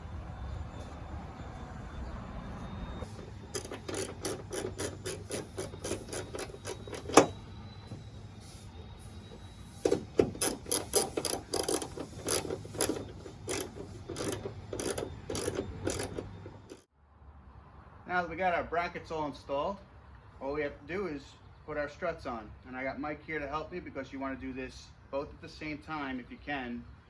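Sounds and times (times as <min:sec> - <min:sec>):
hand ratchet clicking: 0:03.0 - 0:07.4, 0:09.9 - 0:16.9.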